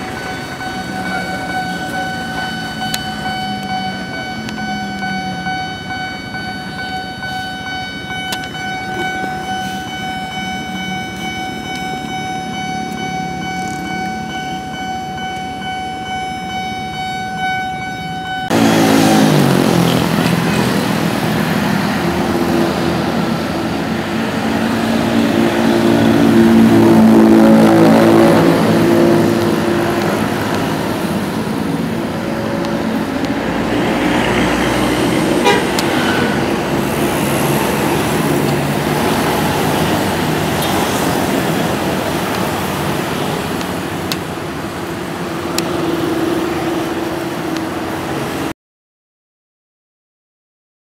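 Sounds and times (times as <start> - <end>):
vehicle engine and road noise: 0.0 - 48.5
steady horn-like tone: 35.2 - 37.4.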